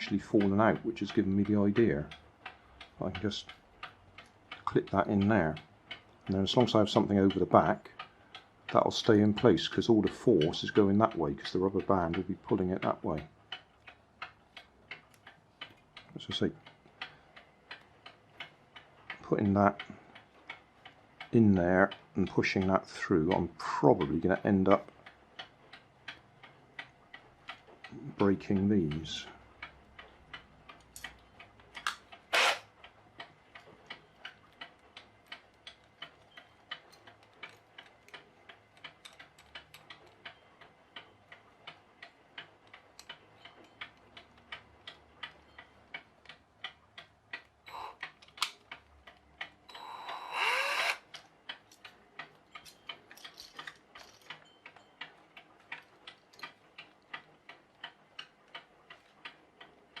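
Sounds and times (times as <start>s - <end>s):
clock ticking: 0.0s - 60.0s
electric drill whining: 32.3s - 32.6s, 49.7s - 51.1s.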